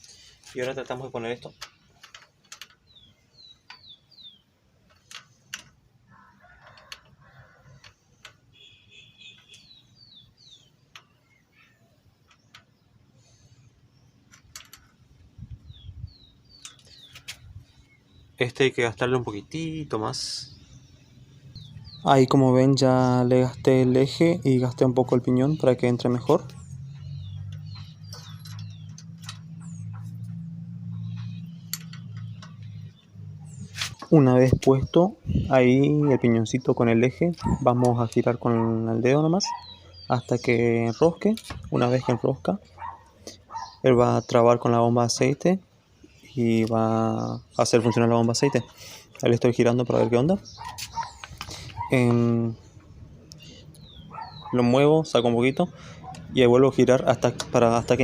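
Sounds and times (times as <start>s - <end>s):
engine parts clicking: 0.0s - 11.3s, 12.1s - 17.5s, 22.8s - 35.0s, 39.6s - 43.8s, 46.4s - 58.0s
bird chirping: 0.0s - 58.0s
clicks of engine parts handled: 4.8s - 5.8s, 26.1s - 30.4s, 31.0s - 33.0s, 41.2s - 41.7s, 50.6s - 53.9s.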